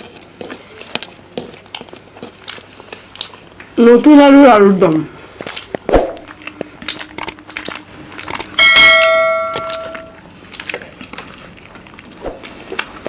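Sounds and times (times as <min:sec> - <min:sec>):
metal dish ringing: 0:08.6 - 0:10.2.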